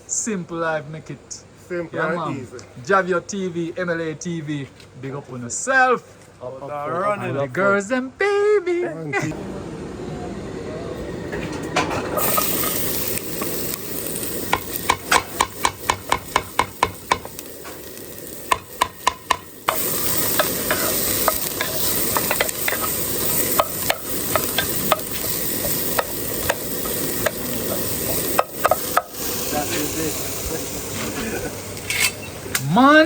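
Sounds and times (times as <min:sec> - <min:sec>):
food sizzling: 0:09.2 - 0:33.0
spoon knocking against pot: 0:14.5 - 0:17.3, 0:18.5 - 0:19.8.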